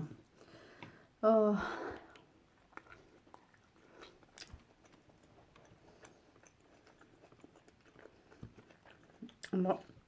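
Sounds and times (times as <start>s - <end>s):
faint chewing: 1.7s - 10.0s.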